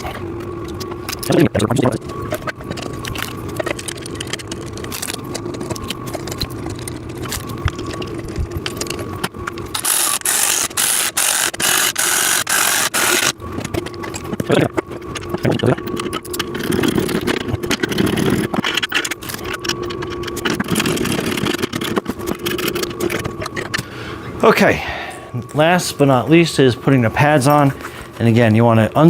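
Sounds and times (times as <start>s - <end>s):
power drill whining: 9.8s - 13.3s.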